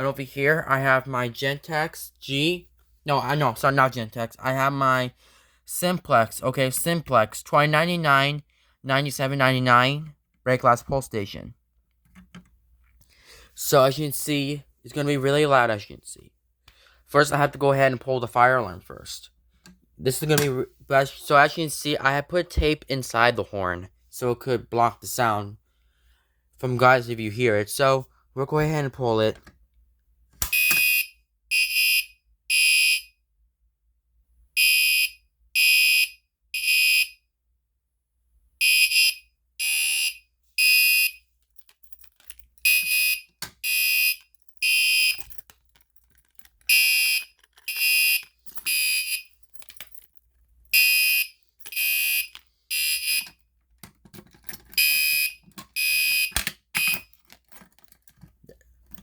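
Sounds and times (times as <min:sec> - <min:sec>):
fire alarm horn beeping: 0:30.5 - 0:33.2, 0:34.6 - 0:37.2, 0:38.6 - 0:41.2, 0:42.6 - 0:45.2, 0:46.7 - 0:49.3, 0:50.7 - 0:53.4, 0:54.8 - 0:57.1.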